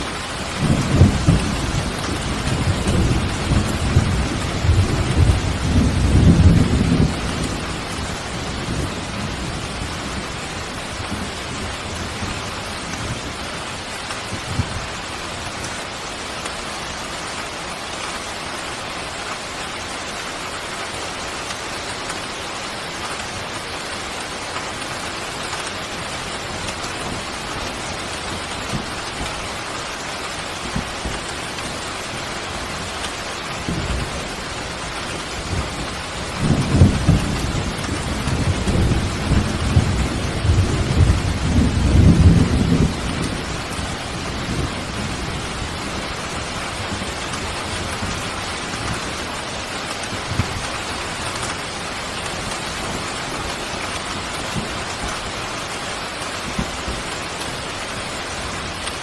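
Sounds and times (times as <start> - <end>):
thunder rumble: 0.0 - 14.9, 33.6 - 55.2
steady rain: 0.0 - 59.0.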